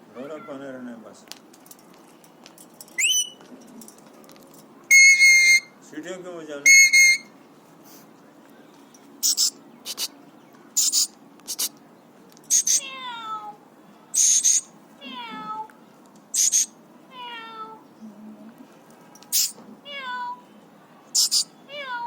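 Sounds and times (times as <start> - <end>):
parakeet harsh calls: 4.9 - 5.7, 6.7 - 7.3, 9.2 - 10.1, 10.8 - 11.7, 12.5 - 12.9, 14.2 - 14.7, 16.3 - 16.8, 19.3 - 19.6, 21.2 - 21.5
parakeet mewing calls: 9.2 - 10.1.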